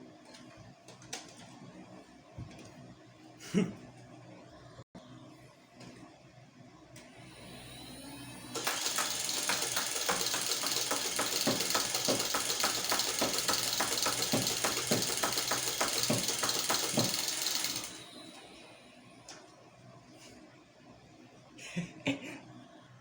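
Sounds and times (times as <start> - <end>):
dart blaster motors running: 7.7 - 18.6
sharp clicks of belt feeding: 8.6 - 18.0.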